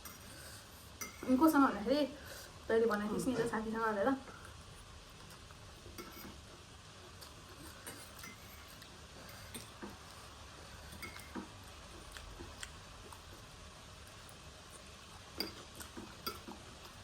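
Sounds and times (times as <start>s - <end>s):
utensils clinking on dishes: 1.0s - 1.4s, 5.9s - 6.4s, 7.6s - 10.0s, 10.9s - 11.5s, 15.4s - 17.0s.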